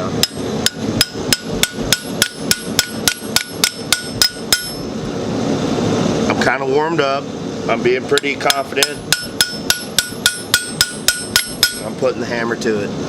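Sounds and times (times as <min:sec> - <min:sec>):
hammer striking chisel on anvil: 0:00.2 - 0:04.8, 0:08.2 - 0:11.9.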